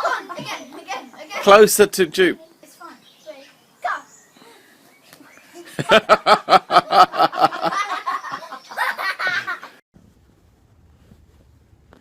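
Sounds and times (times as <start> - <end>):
person laughing hard: 5.7 - 9.7.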